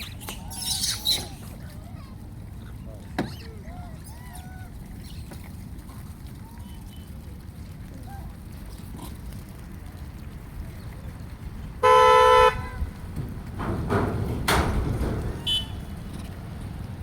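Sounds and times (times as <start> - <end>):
horn toot: 11.8 - 13.1, 15.4 - 16.0.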